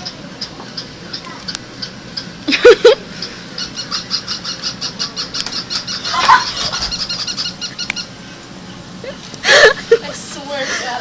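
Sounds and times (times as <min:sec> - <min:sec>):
toy dogs electronic yapping: 0:03.8 - 0:08.1.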